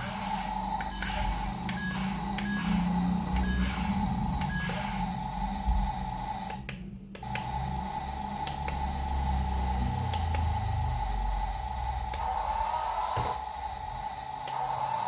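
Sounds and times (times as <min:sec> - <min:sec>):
small electric motors whining: 0:00.0 - 0:06.6, 0:07.2 - 0:15.0.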